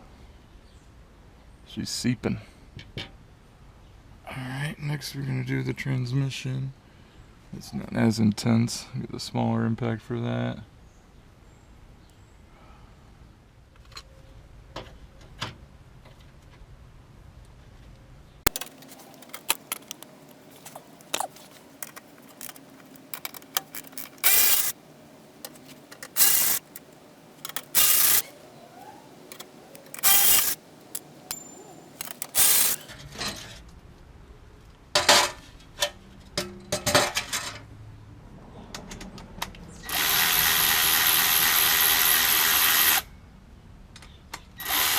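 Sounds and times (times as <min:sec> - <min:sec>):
metal tools clinking: 0:18.5 - 0:24.8, 0:25.4 - 0:28.4, 0:29.2 - 0:32.9
cordless impact wrench running: 0:21.8 - 0:24.8, 0:25.4 - 0:28.3, 0:29.3 - 0:32.8.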